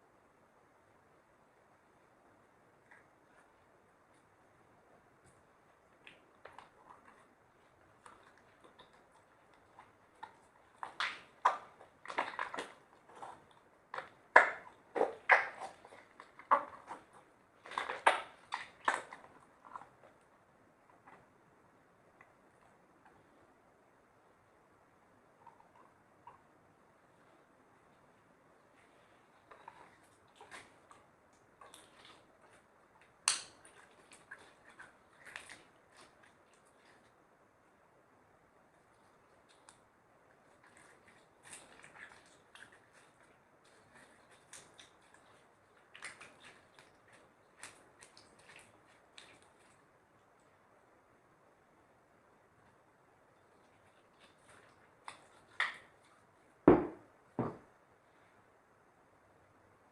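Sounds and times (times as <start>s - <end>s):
sharp slime pop: 33.3s - 33.6s.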